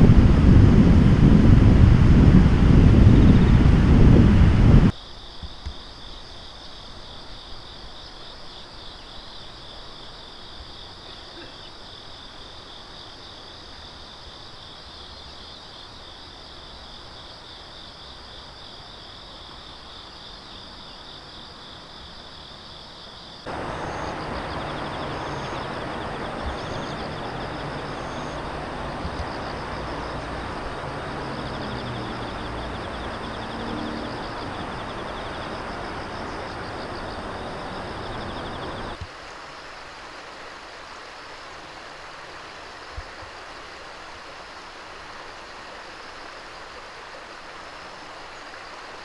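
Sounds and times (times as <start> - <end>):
outdoor noise: 0.0 - 49.0
insects trilling: 4.9 - 39.5.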